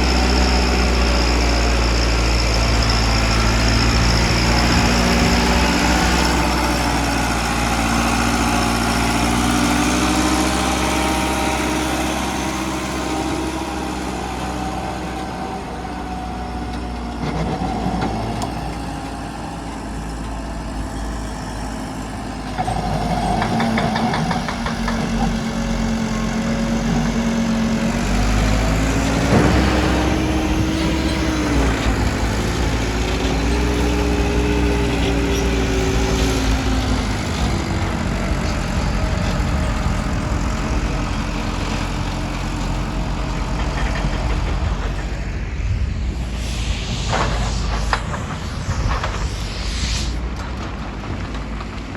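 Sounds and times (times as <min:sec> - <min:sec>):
heavy machine engine running: 0:00.0 - 0:51.9
rattling burst: 0:29.0 - 0:33.7.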